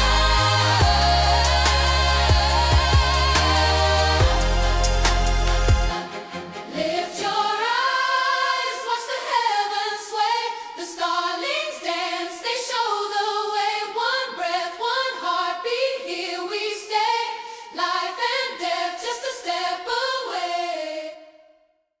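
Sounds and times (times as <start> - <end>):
wordless choir singing: 0.0 - 21.5.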